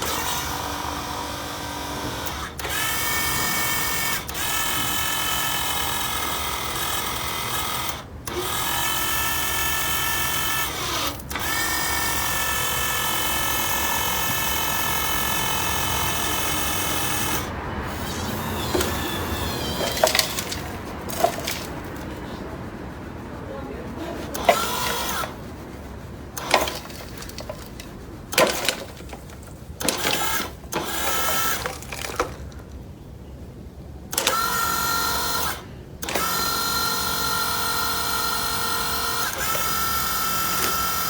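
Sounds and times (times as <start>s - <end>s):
toy car electric motor whining: 0.0s - 22.3s, 24.2s - 25.6s, 26.3s - 32.6s, 34.1s - 41.0s
faint clicks and knocks: 26.4s - 32.8s.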